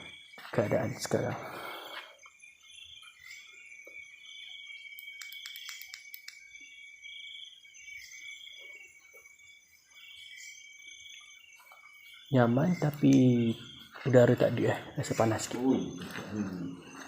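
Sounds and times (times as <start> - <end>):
crickets and insects chirring: 0.0 - 17.0
faint clicks: 5.0 - 6.4.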